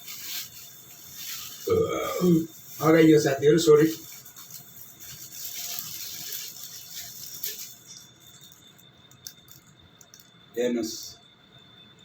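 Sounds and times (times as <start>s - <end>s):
soft rustling: 0.0s - 1.7s.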